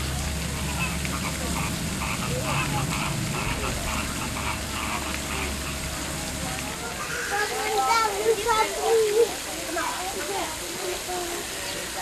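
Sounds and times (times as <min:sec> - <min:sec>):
steady low hum: 0:00.0 - 0:07.1
faint indistinct voices: 0:00.0 - 0:12.0.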